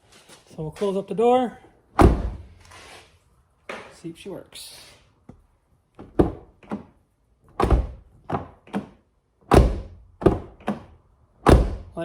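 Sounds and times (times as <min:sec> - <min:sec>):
car door closing thunks: 0:02.0 - 0:02.5, 0:06.0 - 0:06.9, 0:07.6 - 0:08.9, 0:09.5 - 0:11.9.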